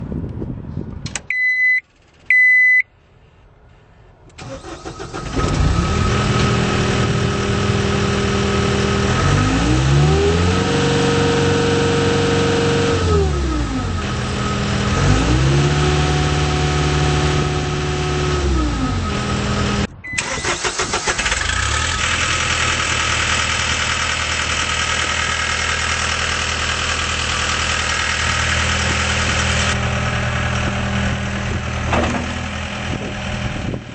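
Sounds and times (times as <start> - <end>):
warning beeps: 1.3 - 2.9
diesel engine starting and revving: 4.3 - 33.9.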